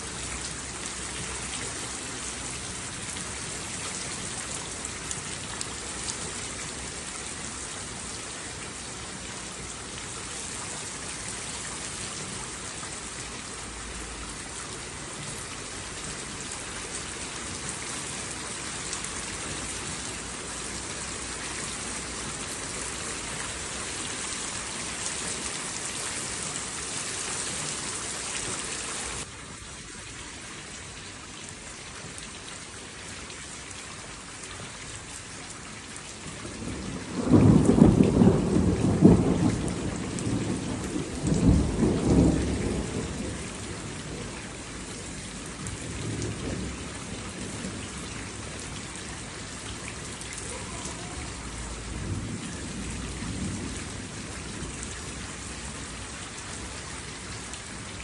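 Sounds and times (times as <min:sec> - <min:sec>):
steady rain: 0:00.0 - 0:58.0
thunder rumble: 0:36.6 - 0:48.4.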